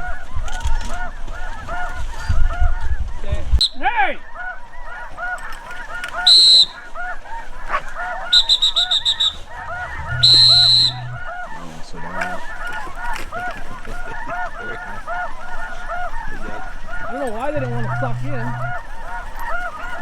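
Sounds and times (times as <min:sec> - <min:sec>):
geese honking: 0:00.0 - 0:03.0, 0:03.6 - 0:20.0
high-pitched piercing notes: 0:08.5 - 0:11.5, 0:17.4 - 0:19.6.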